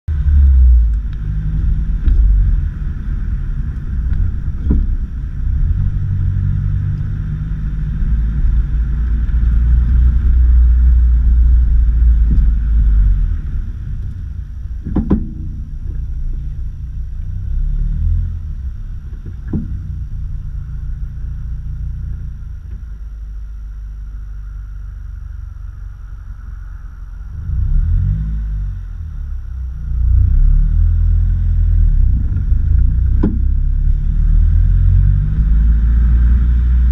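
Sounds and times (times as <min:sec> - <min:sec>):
vehicle low rumble: 0:00.0 - 0:36.9
suspension knocks: 0:04.0 - 0:06.0, 0:14.0 - 0:16.6, 0:19.0 - 0:20.4, 0:32.1 - 0:33.8.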